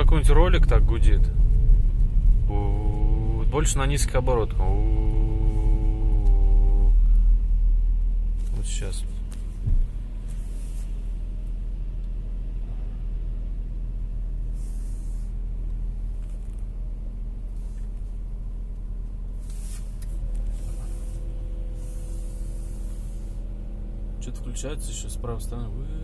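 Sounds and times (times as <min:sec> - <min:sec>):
engine humming: 0:00.0 - 0:26.0
higher hum: 0:01.1 - 0:08.4, 0:16.8 - 0:24.2
short hisses: 0:14.5 - 0:15.4, 0:19.4 - 0:23.5.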